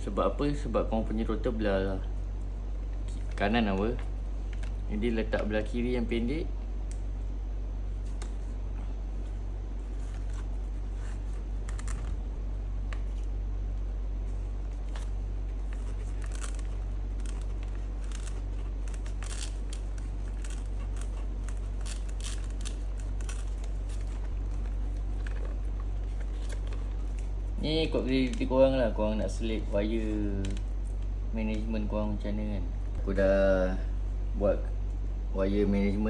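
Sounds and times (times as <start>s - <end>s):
steady low hum: 0.0s - 36.0s
plastic and cable handling: 9.9s - 12.3s, 14.5s - 28.5s.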